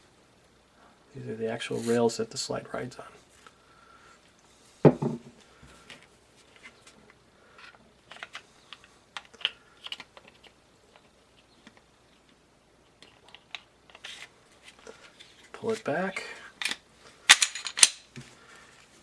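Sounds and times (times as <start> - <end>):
pistol parts clicking and scraping: 7.6 - 11.9, 16.5 - 18.2.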